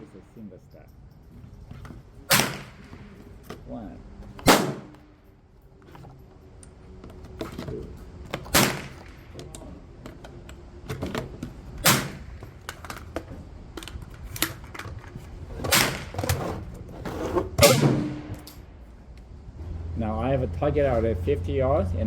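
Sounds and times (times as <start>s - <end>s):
metallic rifle clicks and clacks: 11.8s - 16.4s, 18.2s - 18.7s.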